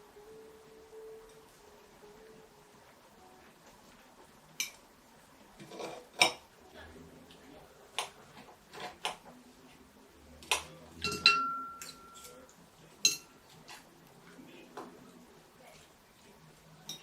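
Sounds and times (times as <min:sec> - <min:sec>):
dishes and cutlery clinking: 0:04.6 - 0:04.8, 0:05.6 - 0:06.5, 0:07.9 - 0:09.4, 0:10.4 - 0:14.0, 0:16.8 - 0:17.0
ringing tone of struck dish: 0:11.0 - 0:12.4.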